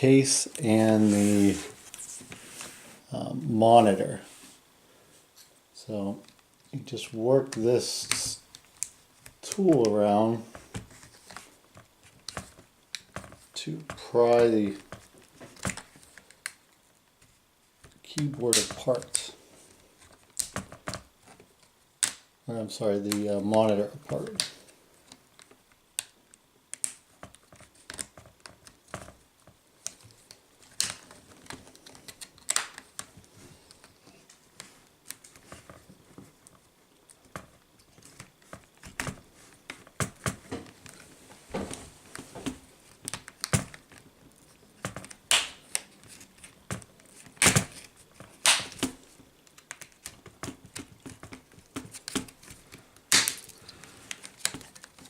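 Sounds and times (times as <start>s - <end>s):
plastic clips popping loose: 44.8s - 52.4s, 53.0s - 55.0s.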